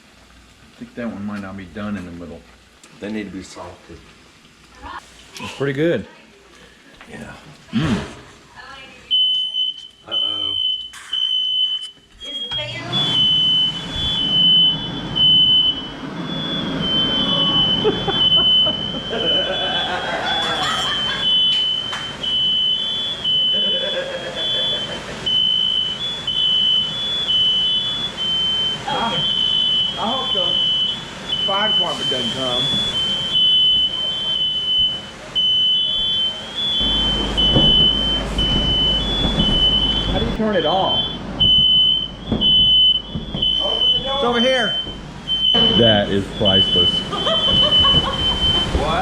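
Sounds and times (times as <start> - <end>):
smoke alarm high-pitched tone: 9.1 - 49.0
low rumble: 36.6 - 49.0.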